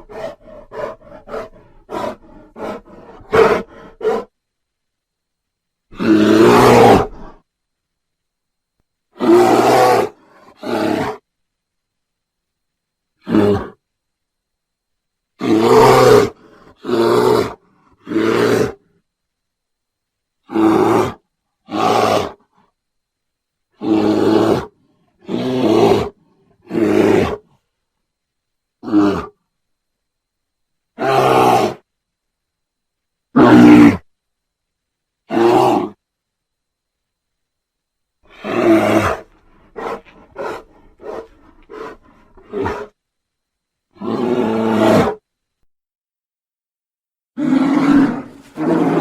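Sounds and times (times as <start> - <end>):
bear roar: 0.0 - 4.3, 5.9 - 7.4, 9.1 - 11.2, 13.2 - 13.8, 15.4 - 18.8, 20.4 - 22.5, 23.8 - 27.6, 28.8 - 29.4, 31.0 - 31.8, 33.3 - 34.1, 35.3 - 36.0, 38.3 - 43.0, 43.9 - 45.2, 47.4 - 49.0
bear grunts: 28.8 - 29.4, 38.3 - 42.9, 47.4 - 49.0.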